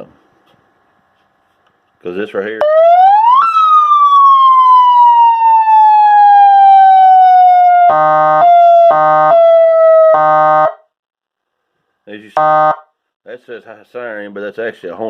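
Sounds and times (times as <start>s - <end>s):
police siren wailing: 2.6s - 10.8s, 12.4s - 12.8s.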